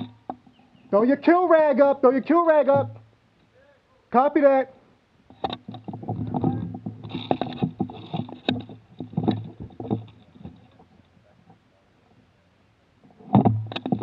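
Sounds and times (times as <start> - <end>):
knocks and rustling of handled rifle: 5.3 - 11.6, 13.1 - 14.0.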